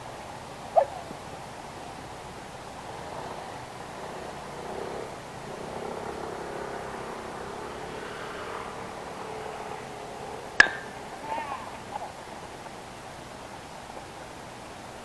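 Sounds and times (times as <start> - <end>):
baseball bat crack: 10.5 - 12.3.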